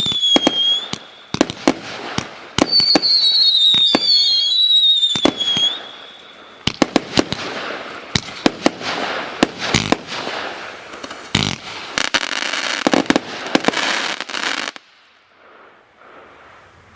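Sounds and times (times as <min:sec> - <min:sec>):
firework whistle: 0:00.0 - 0:06.9
firework bangs: 0:00.0 - 0:15.0
firework crackling: 0:00.0 - 0:16.9.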